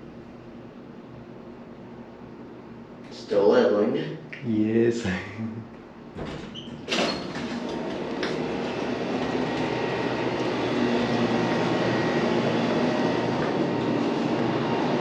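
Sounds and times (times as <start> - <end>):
freight elevator rumbling: 6.0 - 15.0
freight elevator clunk: 6.1 - 9.6.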